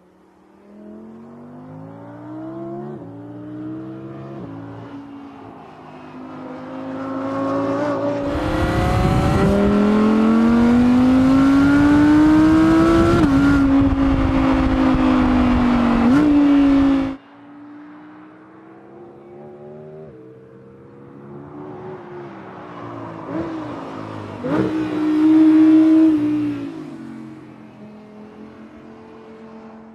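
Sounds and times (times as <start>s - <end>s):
car engine accelerating hard: 7.0s - 17.2s.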